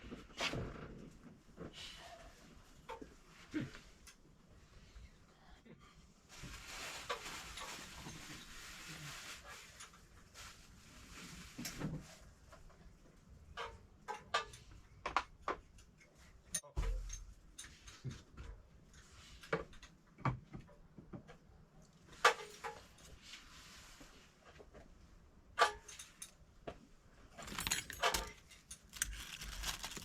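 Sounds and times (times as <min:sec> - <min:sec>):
tools and engine parts clicking: 0:27.4 - 0:30.0.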